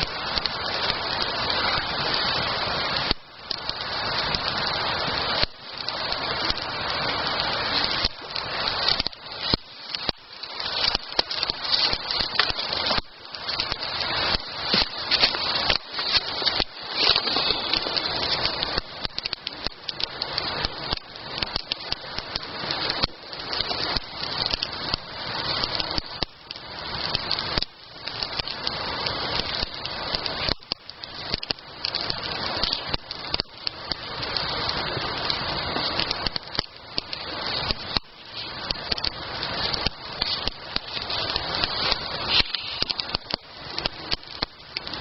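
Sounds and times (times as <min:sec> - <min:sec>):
campfire crackling: 0:00.0 - 0:45.0.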